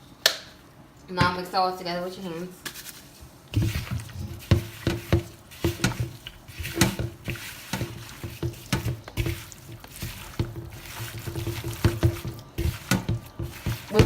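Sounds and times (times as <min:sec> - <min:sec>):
wet squishing of raw chicken: 0:02.8 - 0:14.0.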